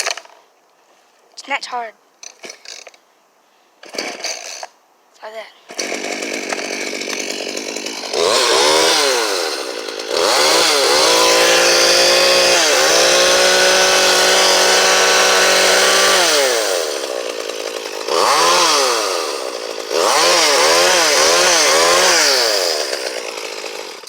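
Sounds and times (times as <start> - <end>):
chainsaw engine revving: 3.8 - 4.7, 5.7 - 24.0.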